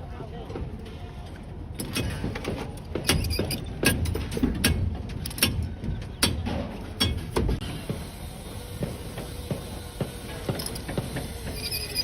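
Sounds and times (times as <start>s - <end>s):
metallic clicks and clanks of rebar: 1.8s - 7.6s.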